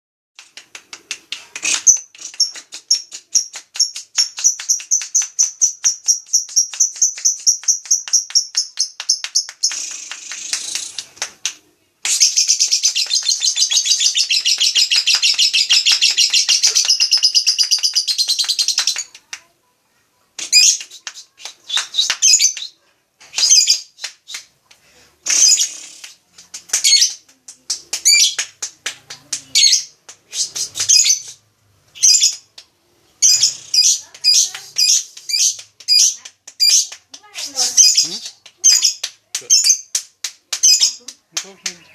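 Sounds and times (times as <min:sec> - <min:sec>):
bird chirping and trilling: 0:12.2 - 0:19.0, 0:32.0 - 0:32.4.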